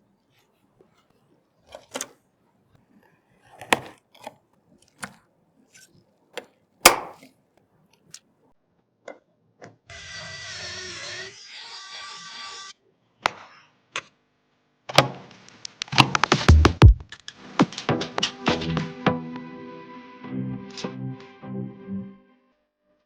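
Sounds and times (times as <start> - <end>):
computer hardware clicks and taps: 3.6 - 4.3, 6.9 - 7.2.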